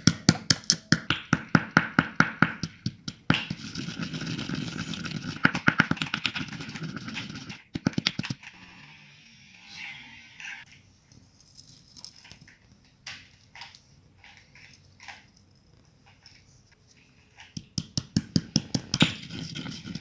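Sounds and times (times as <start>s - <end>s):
pestle pounding in a mortar: 17.6s - 19.4s.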